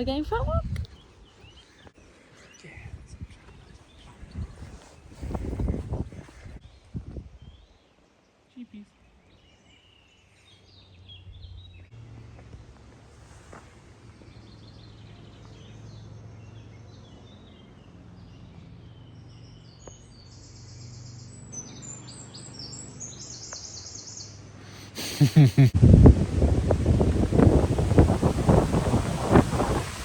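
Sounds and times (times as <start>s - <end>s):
small birds singing and chirping: 0.1s - 11.9s, 14.2s - 25.4s.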